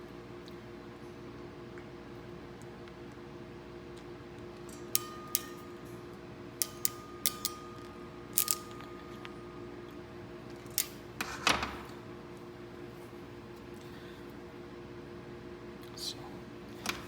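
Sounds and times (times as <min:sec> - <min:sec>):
steady low hum: 0:00.0 - 0:17.0
crimping tool metal clicks: 0:04.7 - 0:05.9, 0:06.6 - 0:09.3.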